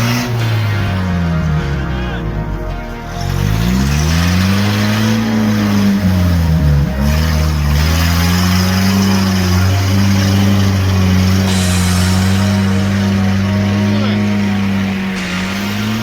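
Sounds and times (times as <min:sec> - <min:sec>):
engine revving: 0:00.0 - 0:16.0.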